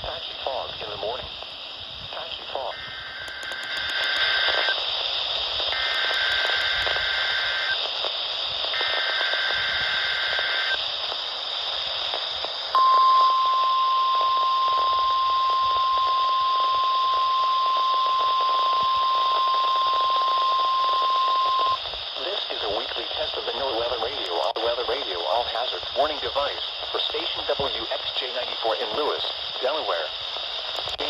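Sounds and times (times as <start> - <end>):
radio hiss: 0.0 - 31.0
digital data bursts: 2.5 - 4.9, 5.6 - 7.9, 8.7 - 10.8
steady warning alarm tone: 2.7 - 4.7, 5.7 - 7.8, 12.8 - 21.8.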